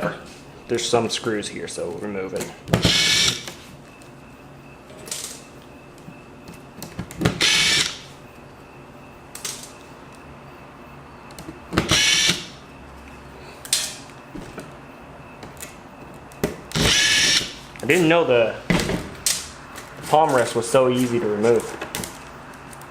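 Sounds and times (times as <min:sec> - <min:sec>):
electric screwdriver whirring: 0:02.8 - 0:03.5, 0:07.4 - 0:08.0, 0:11.8 - 0:12.5, 0:16.7 - 0:17.6.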